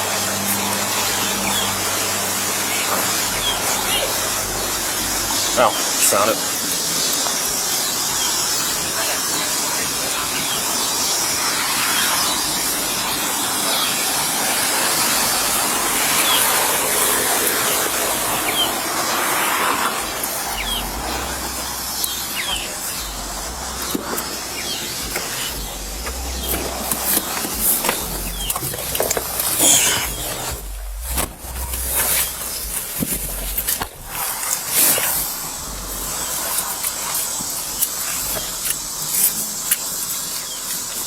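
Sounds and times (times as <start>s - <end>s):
low rumbles: 0.0s - 9.0s, 15.2s - 39.0s
steady hissing noise: 0.0s - 41.0s.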